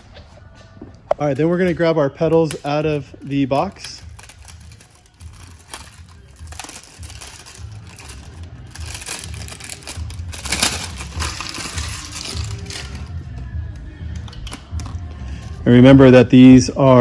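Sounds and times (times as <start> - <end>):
packaging crinkling: 1.2 - 13.4.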